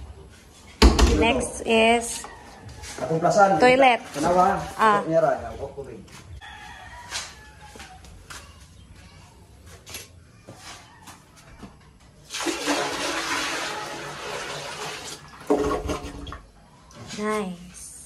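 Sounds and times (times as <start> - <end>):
toilet flushing: 12.3 - 16.5.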